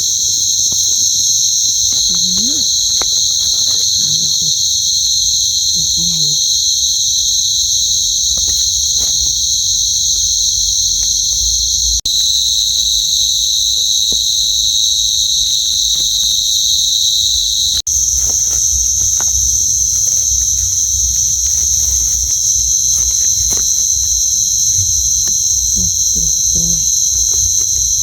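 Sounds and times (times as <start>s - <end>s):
crickets chirping: 0.0s - 28.0s
faint rustles: 0.0s - 28.0s
low microphone rumble: 0.9s - 12.1s, 17.8s - 28.0s.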